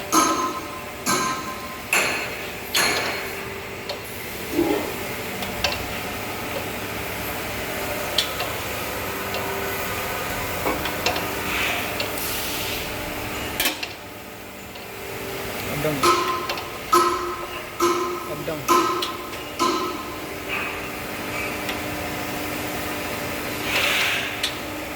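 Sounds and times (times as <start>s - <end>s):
sharp clicks and knocks: 5.4s - 5.9s, 15.9s - 20.6s.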